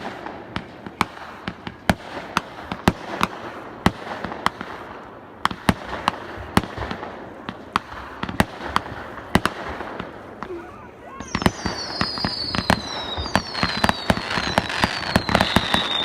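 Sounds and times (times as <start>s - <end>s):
fireworks bangs: 0.0s - 16.0s
rumble of fireworks bursts: 0.0s - 16.0s.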